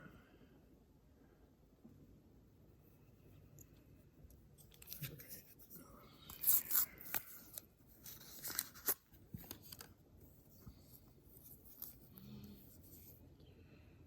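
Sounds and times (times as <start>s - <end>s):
faint rubbing: 2.5s - 13.2s
sharp clicks and scrapes: 4.6s - 13.1s.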